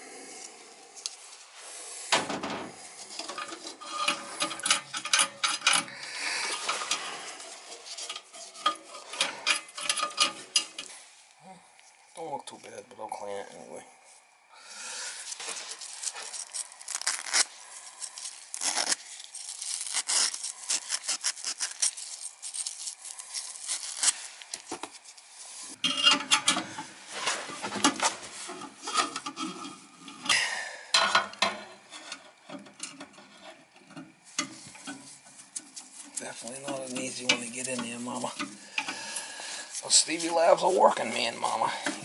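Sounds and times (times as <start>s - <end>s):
metal parts handling: 2.3s - 5.9s, 6.5s - 10.9s, 25.8s - 30.3s
metal rod being scraped: 3.1s - 5.9s, 6.5s - 10.9s.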